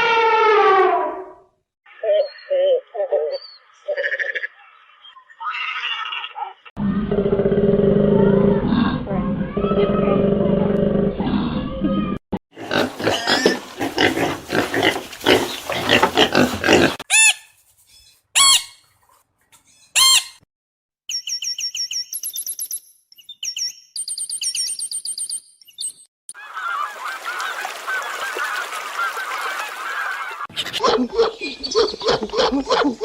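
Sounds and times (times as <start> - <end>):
rapid high-pitched bird chirps: 21.1 - 26.0.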